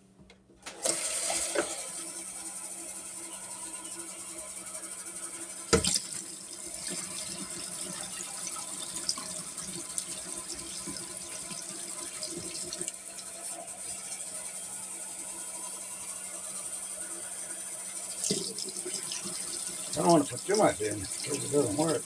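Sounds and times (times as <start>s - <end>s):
water splashing into dishwasher tub: 5.7s - 13.4s, 18.1s - 22.0s.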